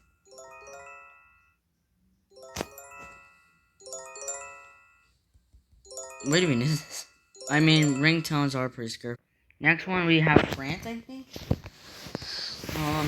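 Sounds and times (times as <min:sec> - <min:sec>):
rising bell-like alert chime: 0:05.9 - 0:08.7.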